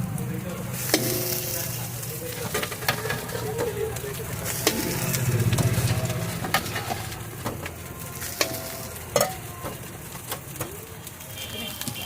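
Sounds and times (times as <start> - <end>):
food sizzling in a pan: 0.0 - 12.0
metal ladle striking a pan: 0.8 - 3.3, 4.5 - 9.9.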